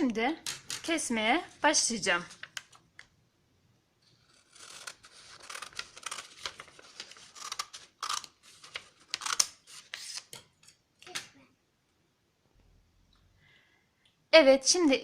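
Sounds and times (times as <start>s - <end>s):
scissors cutting paper: 4.2s - 10.4s.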